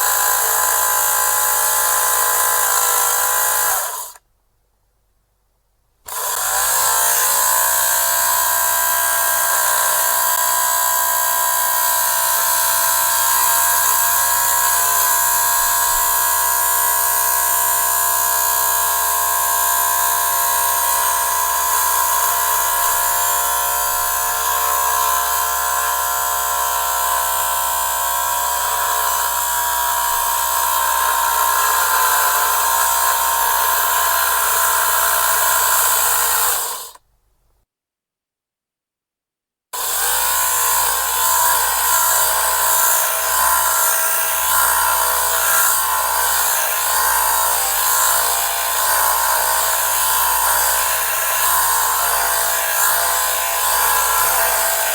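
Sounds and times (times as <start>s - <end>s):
fabric shaver motor buzzing: 0.0s - 4.2s, 6.1s - 37.0s, 39.8s - 54.9s.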